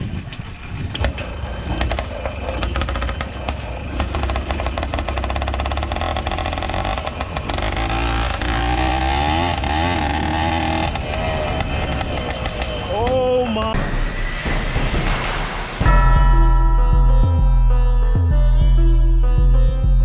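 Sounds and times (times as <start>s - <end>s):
two-stroke engine popping and revving: 0.0s - 13.7s.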